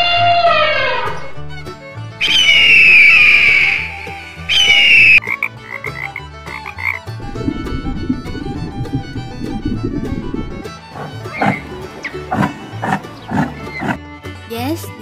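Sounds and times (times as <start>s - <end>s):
frog chirps: 2.2s - 7.1s
frog calls: 2.2s - 9.6s, 11.0s - 14.0s
low rough sound: 7.0s - 14.0s.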